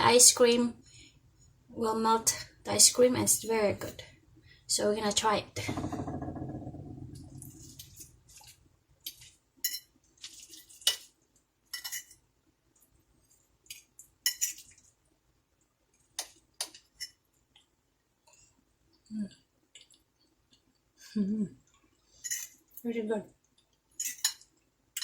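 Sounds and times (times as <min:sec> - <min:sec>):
spoon scraping a dish: 0:14.3 - 0:14.8.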